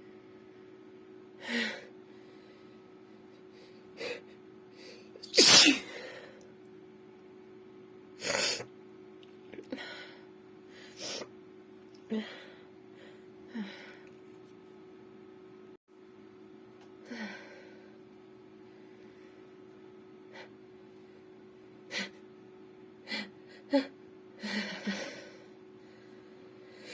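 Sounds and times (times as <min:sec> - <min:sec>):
woman sneezing: 0:05.2 - 0:06.0.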